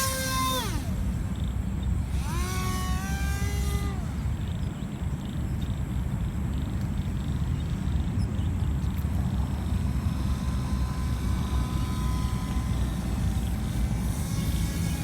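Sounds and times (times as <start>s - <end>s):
propeller motor whine: 0.0s - 5.2s, 8.9s - 15.0s.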